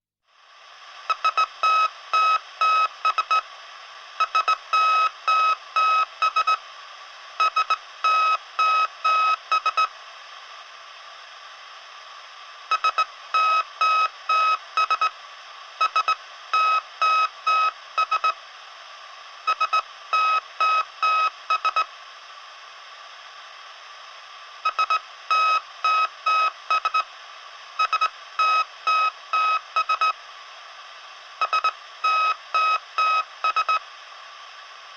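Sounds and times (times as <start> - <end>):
morse code beeping: 31.4 - 33.8.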